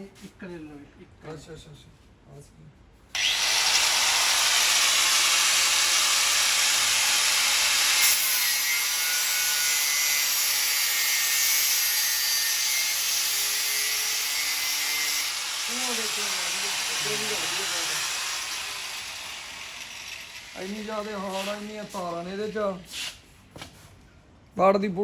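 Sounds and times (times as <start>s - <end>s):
angle grinder cutting hose: 3.2s - 23.0s.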